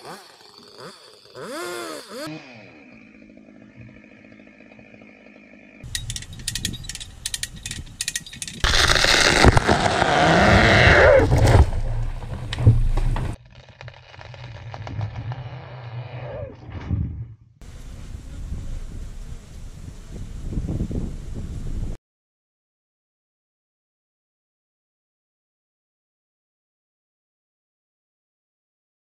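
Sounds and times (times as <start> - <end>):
chainsaw revving and idling: 0.0 - 6.1, 8.6 - 12.2
wood cracking sharply: 5.9 - 15.4
tree crashing down: 8.6 - 15.2.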